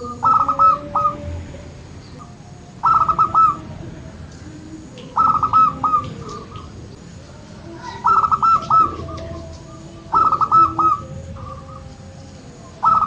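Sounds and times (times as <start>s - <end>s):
dove cooing song: 0.0s - 13.0s
faint bird chirps: 5.0s - 13.0s.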